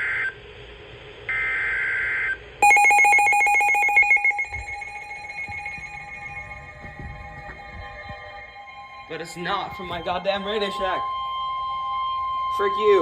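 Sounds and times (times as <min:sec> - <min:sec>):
pulsing alert tone: 0:02.6 - 0:07.8
shrill digital header tones: 0:02.6 - 0:13.0.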